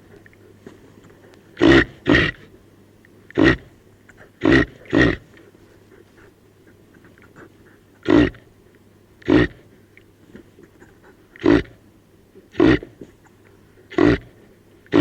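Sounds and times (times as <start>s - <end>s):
reindeer grunting: 1.6s - 2.5s, 3.3s - 5.4s, 8.0s - 8.5s, 9.2s - 9.7s, 11.3s - 11.8s, 12.5s - 13.0s, 13.8s - 15.0s.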